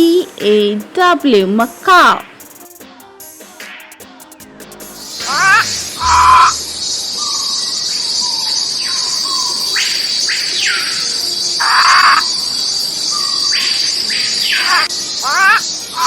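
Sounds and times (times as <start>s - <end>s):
high insect buzz: 5.0s - 7.6s, 8.9s - 16.0s
macaw squawking harshly: 5.2s - 6.6s, 9.0s - 12.4s, 13.1s - 16.0s.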